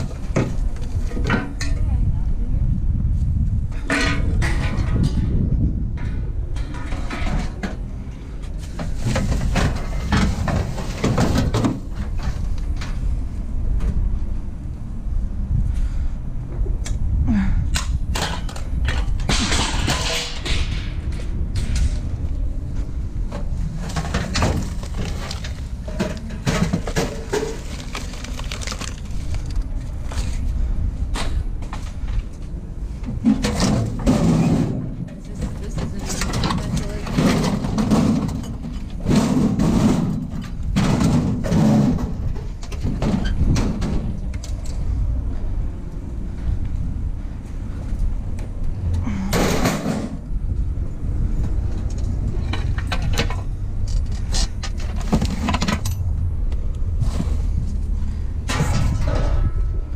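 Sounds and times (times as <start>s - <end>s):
steady low rumble: 0.0s - 59.9s
scrap metal knocking and clanking: 3.7s - 13.0s, 18.1s - 22.2s, 23.3s - 29.4s, 33.0s - 44.6s, 58.4s - 59.9s.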